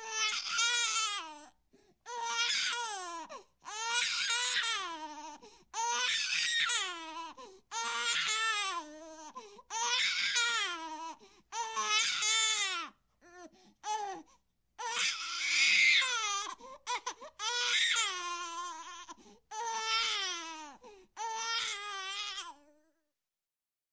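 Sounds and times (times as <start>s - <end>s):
infant wailing: 0.0s - 22.8s
baby catching breath: 13.5s - 14.5s, 19.1s - 19.5s, 20.8s - 21.2s.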